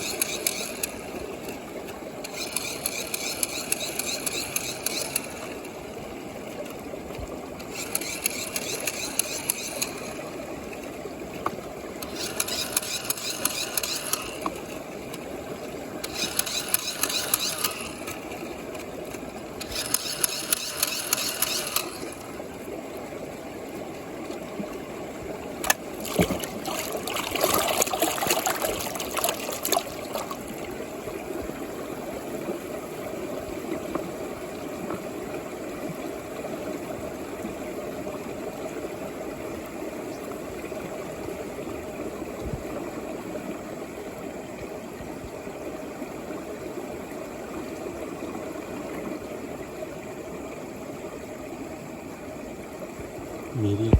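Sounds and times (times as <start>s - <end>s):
sharp clicks: 0.0s - 1.0s, 2.2s - 5.6s, 7.6s - 10.2s, 12.0s - 14.6s, 16.0s - 18.2s, 19.6s - 22.2s
rapid buzzing rattle: 0.0s - 1.6s, 2.2s - 5.8s, 7.6s - 10.4s, 12.0s - 14.9s, 16.0s - 18.8s, 19.5s - 22.4s
water bubbling in a tube: 24.6s - 31.6s.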